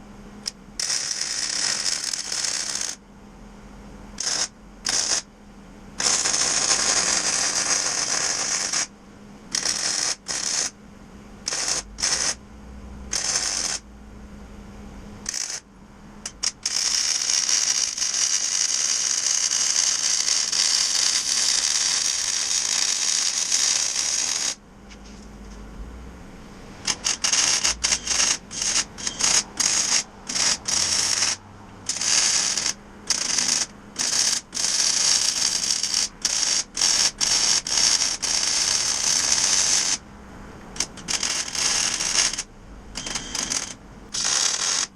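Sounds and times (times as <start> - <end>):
hissing crackling shop tool: 4.2 - 5.3, 6.0 - 8.9, 9.5 - 10.7, 11.4 - 12.4, 13.1 - 13.8, 16.2 - 25.2, 26.4 - 40.0, 40.8 - 44.9.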